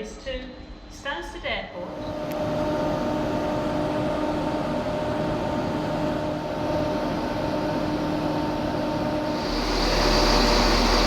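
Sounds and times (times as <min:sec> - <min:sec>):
held hum tones: 0:02.0 - 0:11.0.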